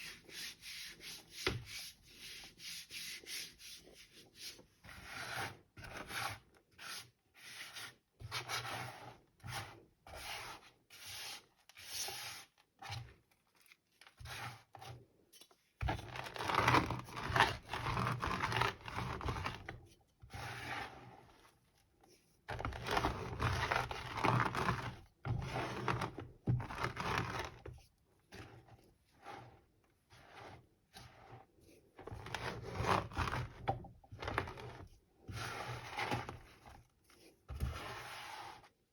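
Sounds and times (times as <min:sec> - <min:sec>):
rolling pin crushing chalk: 0:15.8 - 0:19.8, 0:22.5 - 0:27.8.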